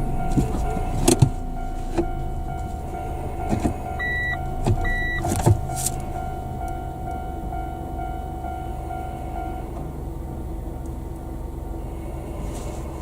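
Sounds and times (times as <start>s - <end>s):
car road and engine noise: 0.0s - 13.0s
short high electronic beeps: 4.0s - 5.2s.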